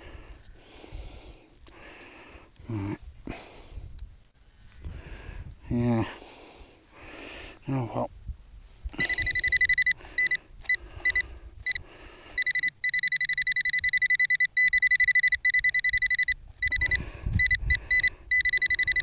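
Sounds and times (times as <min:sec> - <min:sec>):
pulsing electronic beeping: 0:09.0 - 0:10.4, 0:12.4 - 0:19.0.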